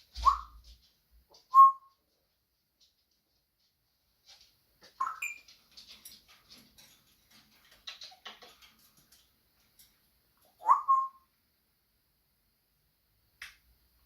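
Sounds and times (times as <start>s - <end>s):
parrot squeaking and chirping: 0.2s - 0.6s, 4.8s - 5.6s, 10.4s - 11.2s
parrot clicks and scratchy noises: 2.8s - 10.5s.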